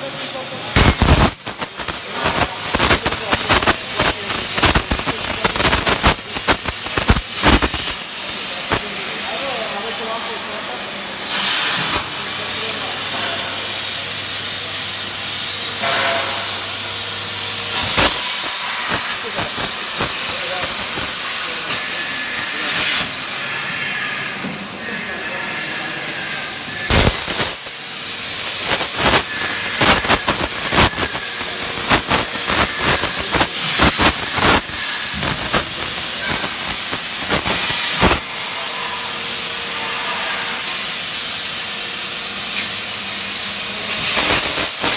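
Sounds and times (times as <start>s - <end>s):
plasma arc hissing: 0.0s - 24.2s, 25.2s - 44.9s
sharp cracks and pops: 0.8s - 8.0s, 17.8s - 21.2s, 26.9s - 27.7s, 28.5s - 38.2s, 44.0s - 44.9s.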